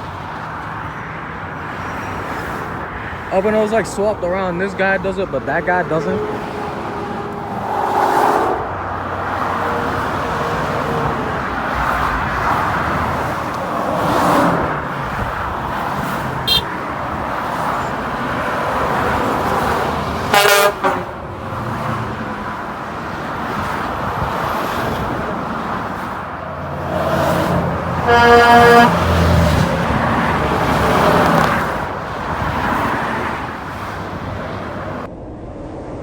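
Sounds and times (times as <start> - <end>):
highway road noise: 0.0 - 36.0
vehicle horn blast: 16.4 - 16.8, 20.3 - 21.2, 28.0 - 29.3.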